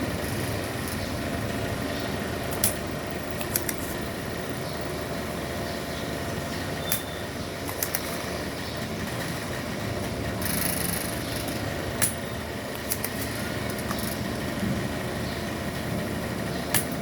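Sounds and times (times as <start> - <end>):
steady machine hum: 0.0 - 17.0
sharp clicks: 3.4 - 4.0, 6.9 - 8.2.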